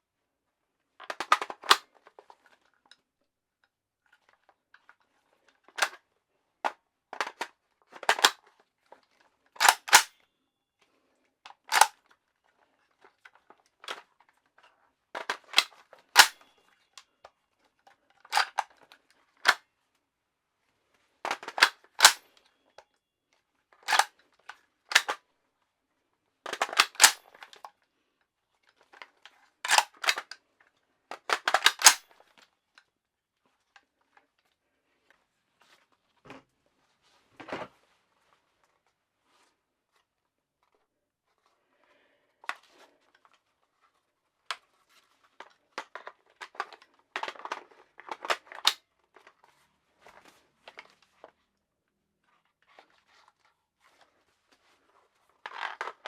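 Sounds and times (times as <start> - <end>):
metallic gun clacks and clicks: 9.6 - 10.1, 15.4 - 16.5, 21.3 - 22.3, 23.9 - 24.1, 24.9 - 25.2, 26.5 - 27.3, 31.3 - 32.0.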